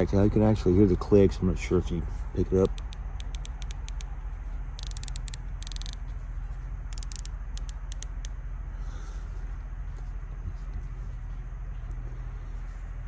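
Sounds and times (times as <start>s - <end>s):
scope turret detent clicks: 2.7s - 4.2s, 4.8s - 6.0s, 7.0s - 8.4s.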